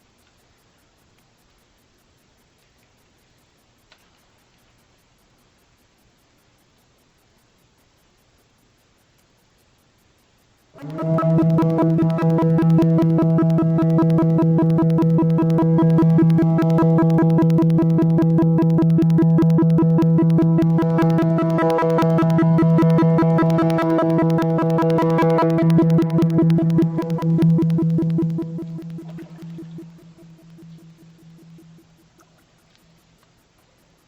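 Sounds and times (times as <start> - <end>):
conch shell trumpet note: 10.8 - 17.5.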